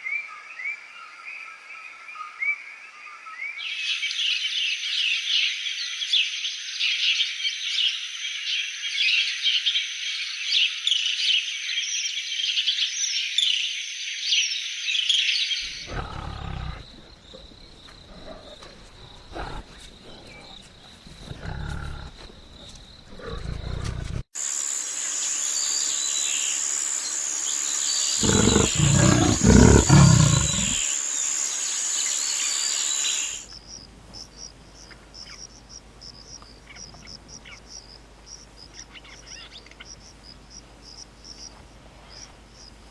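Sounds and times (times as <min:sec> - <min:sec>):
insects and birds chirping: 0:00.0 - 0:42.9
loud low animal roar: 0:15.6 - 0:22.3, 0:23.1 - 0:24.2, 0:28.2 - 0:30.8
low animal growls: 0:15.6 - 0:24.2, 0:28.2 - 0:30.8
high insect drone: 0:24.4 - 0:33.8.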